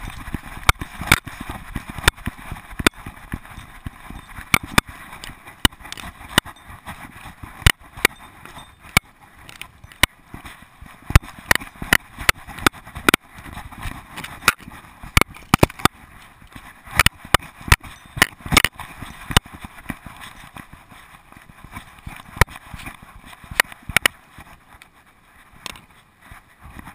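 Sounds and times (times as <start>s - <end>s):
camera rattling in mount: 0.0s - 16.0s.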